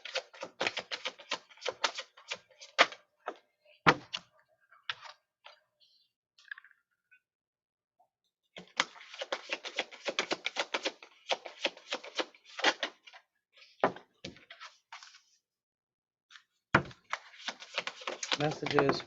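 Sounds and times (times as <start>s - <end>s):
cards being shuffled: 0.0s - 3.0s, 8.6s - 13.1s, 17.1s - 19.0s.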